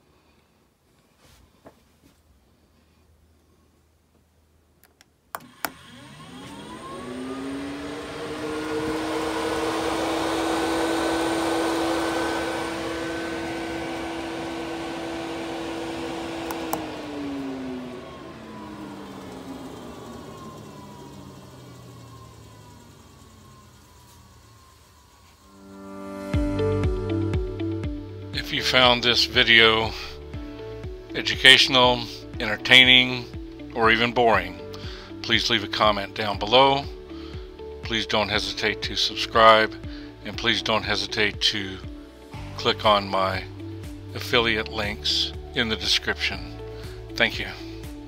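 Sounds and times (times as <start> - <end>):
fan switch click: 4.8 - 5.8, 16.4 - 17.0
exhaust fan motor whine: 5.4 - 48.0.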